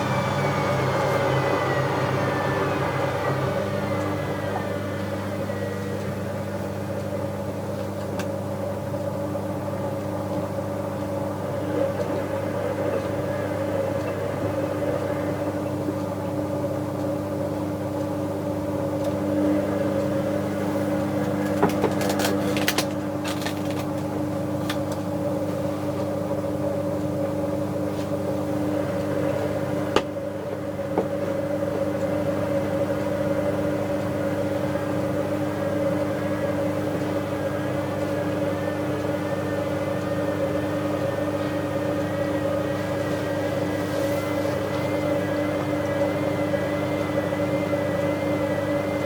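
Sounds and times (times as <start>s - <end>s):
washing machine motor whine: 0.0s - 49.0s.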